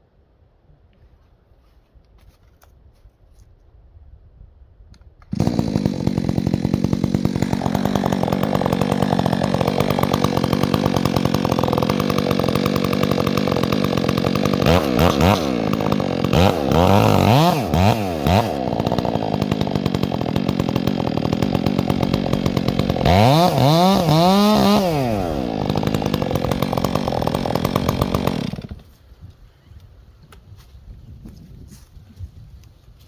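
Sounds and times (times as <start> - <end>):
chainsaw revving: 5.3 - 28.9.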